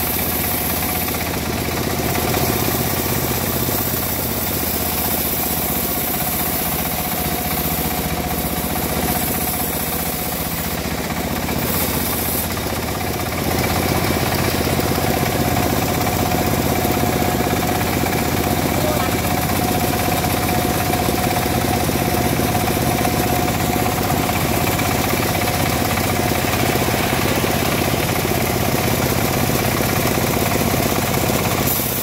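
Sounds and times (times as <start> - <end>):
small engine idling: 0.0 - 32.0.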